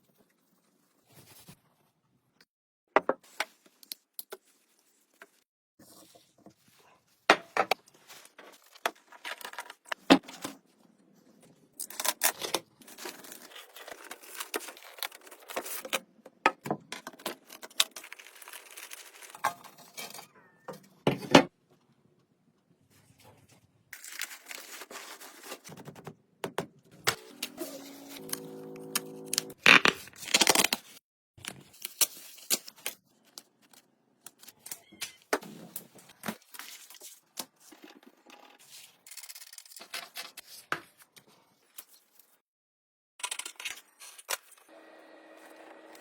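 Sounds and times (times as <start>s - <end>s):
crinkling rustling scrapes: 22.8s - 25.7s.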